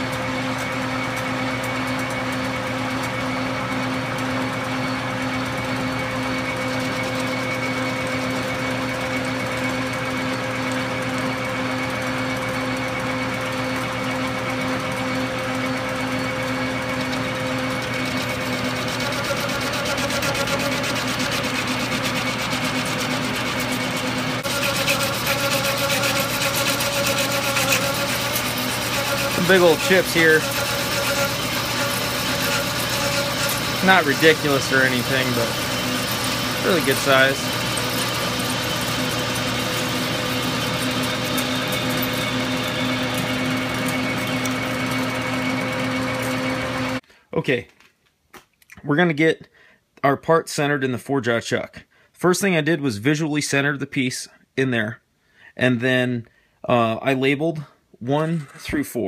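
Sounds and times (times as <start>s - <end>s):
lathe cutting metal: 0.0s - 47.0s
lathe motor whine: 0.0s - 47.0s.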